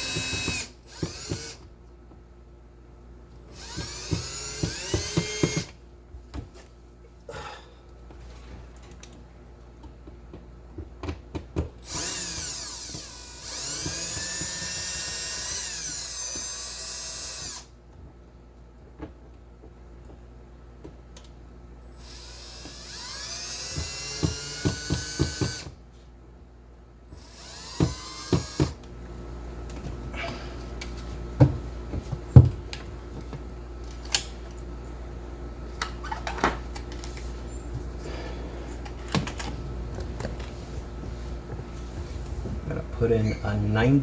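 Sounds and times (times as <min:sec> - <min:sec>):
handheld power tool whining: 0:00.0 - 0:01.6, 0:03.4 - 0:05.8, 0:11.8 - 0:17.7, 0:21.8 - 0:25.8, 0:27.1 - 0:28.8.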